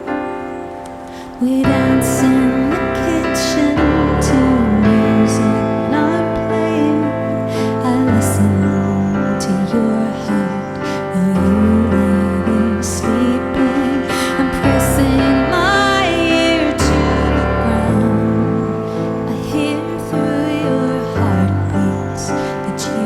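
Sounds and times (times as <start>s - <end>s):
soft slow instrumental music: 0.0s - 23.0s.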